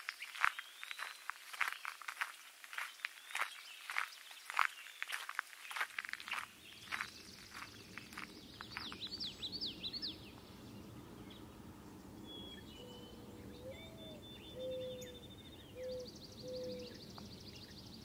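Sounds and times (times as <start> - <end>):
footsteps through grass: 0.0 - 9.1
songbirds chirping and trilling: 0.0 - 18.0
low drawn-out bird calls: 6.4 - 18.0.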